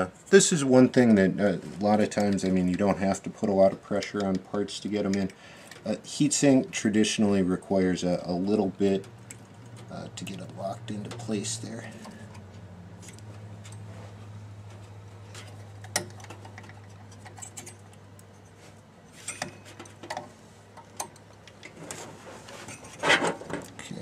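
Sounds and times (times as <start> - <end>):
steady low hum: 0.0 - 24.0
clicks and scrapes of metal and plastic: 21.0 - 23.8.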